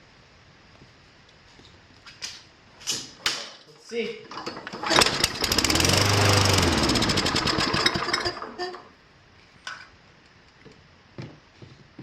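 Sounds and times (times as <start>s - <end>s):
lawn mower engine starting and running: 4.3s - 9.0s.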